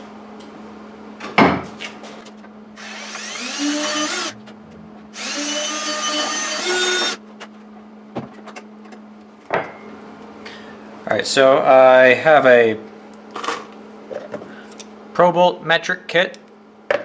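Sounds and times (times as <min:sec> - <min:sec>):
electric drill whining: 0:02.8 - 0:04.4, 0:05.2 - 0:07.2.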